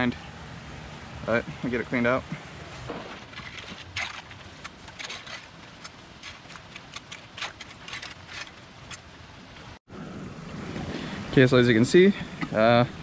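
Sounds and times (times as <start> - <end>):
rake scraping grass clippings: 2.6 - 9.0.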